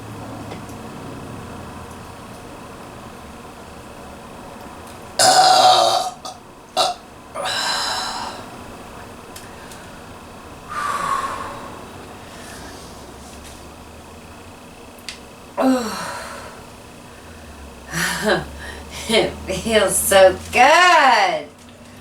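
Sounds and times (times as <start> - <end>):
woman burping: 5.2 - 8.4, 15.6 - 16.6, 17.9 - 19.4.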